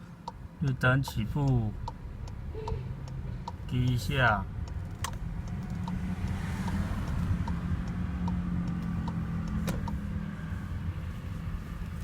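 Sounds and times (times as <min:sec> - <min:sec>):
light ticking: 0:00.0 - 0:10.1
engine and drivetrain rumble: 0:00.0 - 0:12.0
sharp click: 0:03.1 - 0:10.0.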